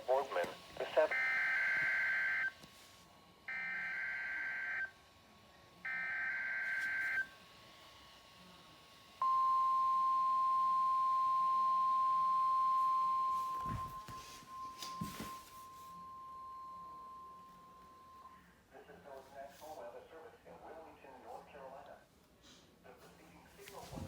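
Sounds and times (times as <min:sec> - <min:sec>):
steady alarm tone: 0:01.0 - 0:02.6, 0:03.5 - 0:05.0, 0:05.8 - 0:07.3, 0:09.2 - 0:18.4.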